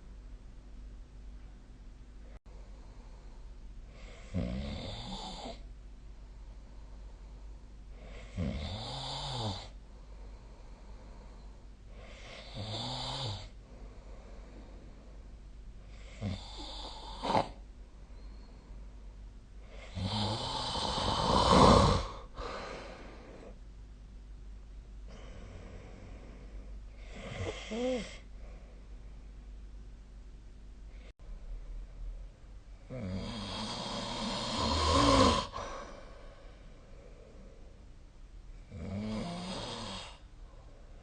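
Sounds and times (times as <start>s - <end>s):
person snoring: 3.9s - 5.6s, 8.0s - 9.8s, 12.0s - 13.6s, 15.9s - 17.6s, 19.7s - 23.6s, 25.1s - 28.3s, 32.9s - 36.3s, 38.7s - 40.2s.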